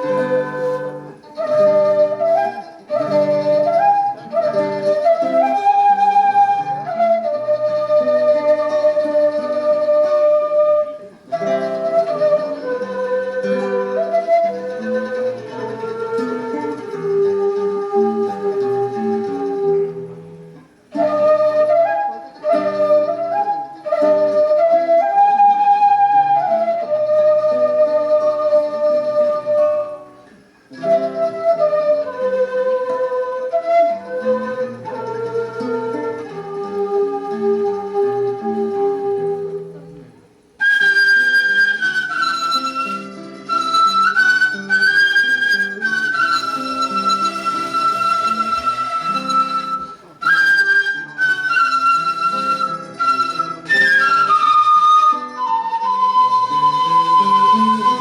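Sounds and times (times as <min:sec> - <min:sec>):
bamboo flute melody: 0:00.0 - 0:58.0
guitar accompaniment: 0:00.0 - 0:58.0
lower accompaniment: 0:40.6 - 0:58.0.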